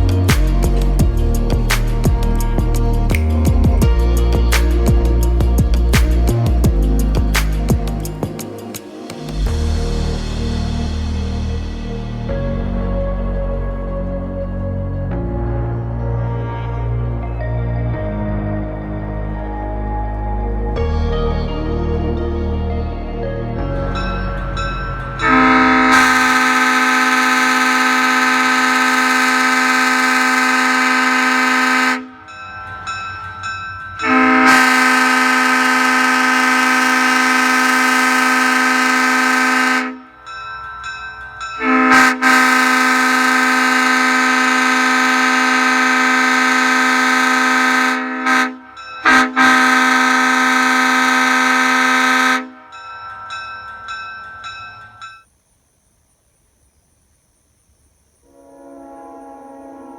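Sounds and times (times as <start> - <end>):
air horn chord blasts: 25.1 - 32.3, 34.0 - 40.2, 41.6 - 52.7, 58.3 - 59.9.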